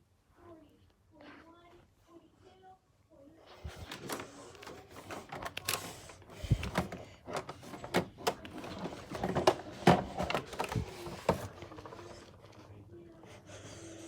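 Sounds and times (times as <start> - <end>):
objects knocking and clattering: 6.4 - 12.0.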